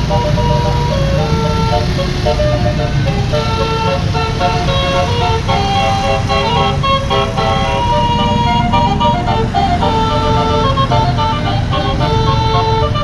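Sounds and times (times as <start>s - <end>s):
bus engine rumble: 0.0s - 13.0s
bus musical horn melody: 0.0s - 13.0s.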